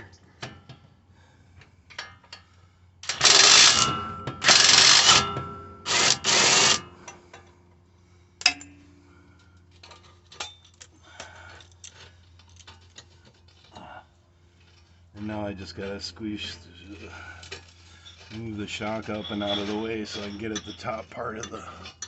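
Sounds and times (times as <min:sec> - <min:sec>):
tools clicking and rattling: 0:01.9 - 0:07.5, 0:09.4 - 0:13.9
impact wrench hammering: 0:03.0 - 0:06.8
sharp metallic clink: 0:08.4 - 0:08.8.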